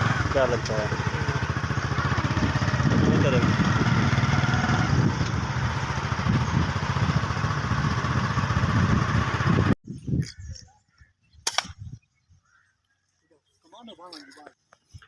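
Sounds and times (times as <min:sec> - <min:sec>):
vehicle engine running: 0:00.0 - 0:09.8.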